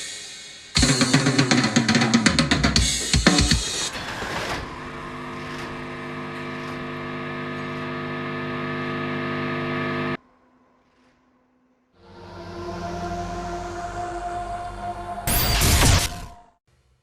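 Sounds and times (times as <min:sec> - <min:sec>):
droning held chord: 0:04.5 - 0:10.2.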